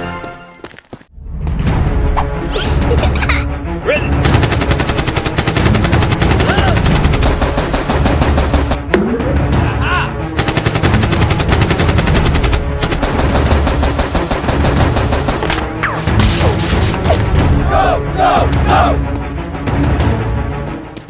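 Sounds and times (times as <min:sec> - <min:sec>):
rapid automatic gunfire: 0:04.2 - 0:08.8, 0:10.4 - 0:15.5.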